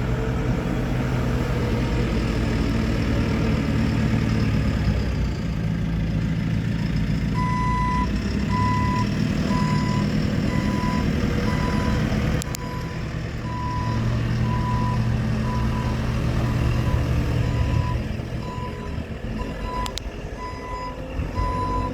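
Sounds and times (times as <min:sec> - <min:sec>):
diesel engine running: 0:00.0 - 0:21.9
reversing alarm beeping: 0:07.4 - 0:21.9.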